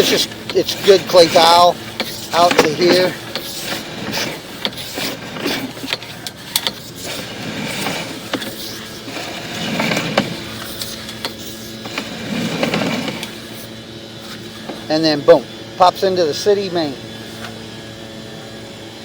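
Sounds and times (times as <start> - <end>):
cable clicking and knocking: 0.0 - 13.4
steady hum: 0.0 - 19.0.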